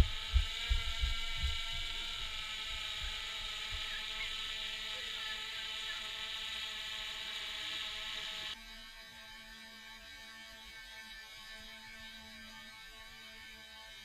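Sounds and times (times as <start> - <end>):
drone propellers whining: 0.0 - 8.6.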